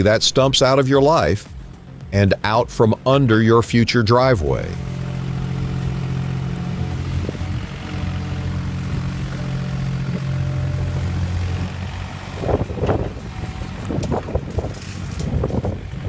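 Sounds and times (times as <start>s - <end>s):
excavator engine running: 0.0s - 16.0s.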